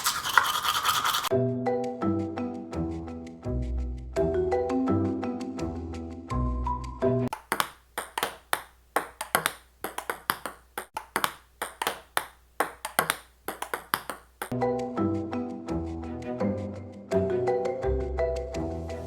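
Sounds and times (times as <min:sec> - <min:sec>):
mallet percussion music: 0:04.2 - 0:05.7.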